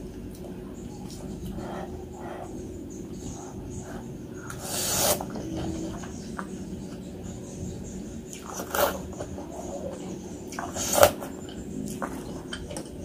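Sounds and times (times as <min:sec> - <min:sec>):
soft chewing: 0:08.2 - 0:13.0.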